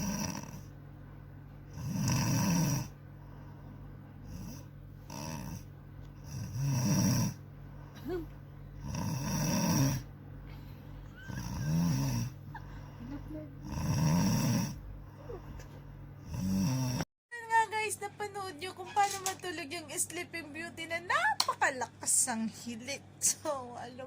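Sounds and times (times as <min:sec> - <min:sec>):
woman snoring loudly: 0:00.0 - 0:00.7, 0:01.7 - 0:03.0, 0:04.2 - 0:07.4, 0:08.8 - 0:10.1, 0:11.1 - 0:15.5, 0:16.2 - 0:17.1.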